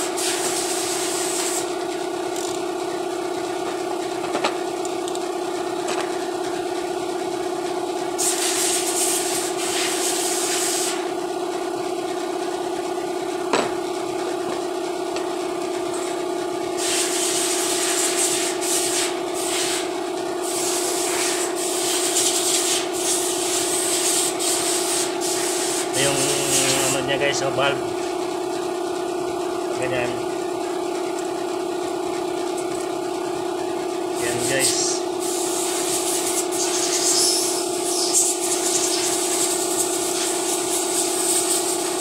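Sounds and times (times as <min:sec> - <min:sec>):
rubbing hiss on metal parts: 0:00.1 - 0:01.7, 0:08.2 - 0:11.0, 0:16.8 - 0:19.8, 0:20.5 - 0:27.0, 0:34.3 - 0:42.0
steady hum: 0:22.8 - 0:40.6.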